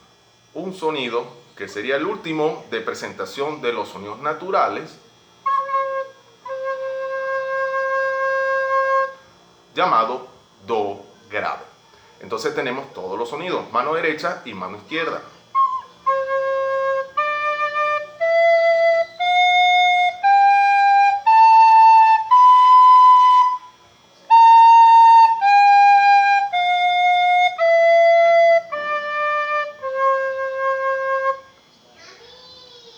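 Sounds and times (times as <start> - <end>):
recorder playing held notes: 5.4 - 9.2, 15.0 - 31.6.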